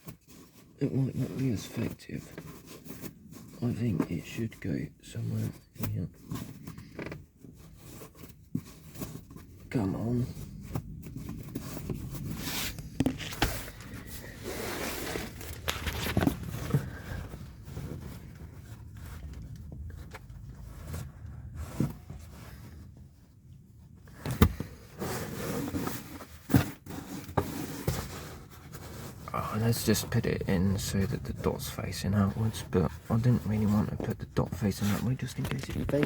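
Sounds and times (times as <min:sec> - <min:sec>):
bag rustling and scraping: 0:06.2 - 0:23.2, 0:23.9 - 0:30.0, 0:32.7 - 0:36.0.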